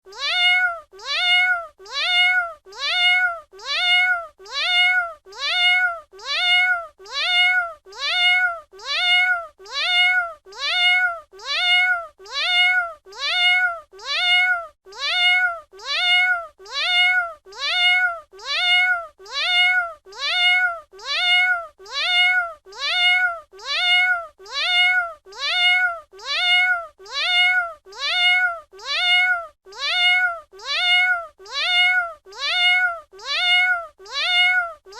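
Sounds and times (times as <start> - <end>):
cat meowing: 0.1 - 34.9.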